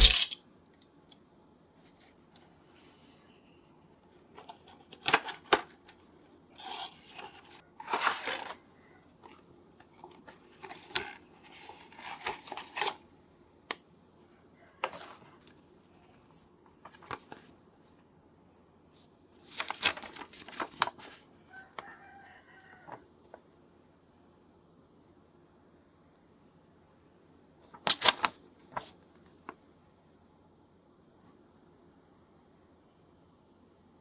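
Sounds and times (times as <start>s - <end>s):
packaging crinkling and tearing: 0.0s - 0.4s.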